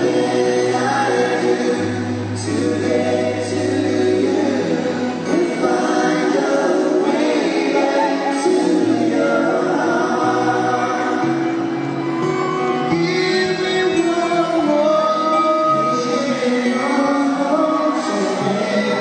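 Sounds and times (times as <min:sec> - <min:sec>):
backing music: 0:00.0 - 0:19.0
male vocal group singing harmony: 0:00.0 - 0:19.0.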